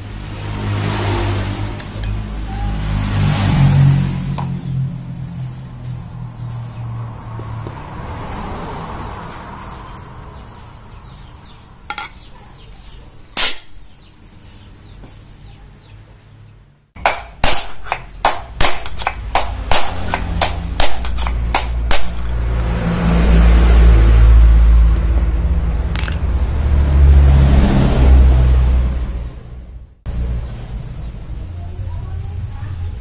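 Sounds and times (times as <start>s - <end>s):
hammer striking metal: 13.4s - 14.0s, 17.0s - 22.5s.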